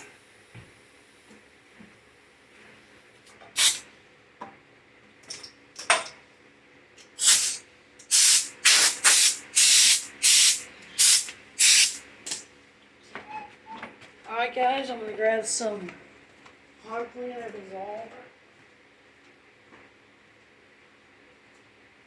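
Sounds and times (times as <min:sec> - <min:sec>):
spray nozzle hissing in bursts: 0:03.6 - 0:03.8, 0:07.2 - 0:12.0.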